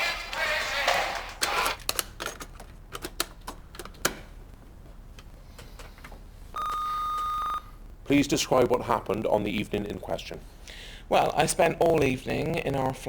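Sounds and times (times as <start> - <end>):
electronic beep: 6.6 - 7.7.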